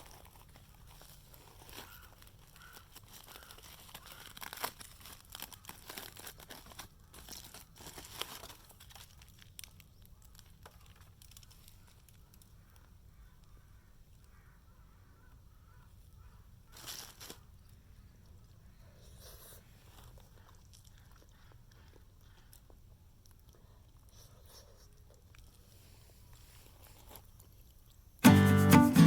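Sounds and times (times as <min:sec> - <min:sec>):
dry material crinkling and tearing: 0:00.0 - 0:12.5, 0:16.8 - 0:17.4.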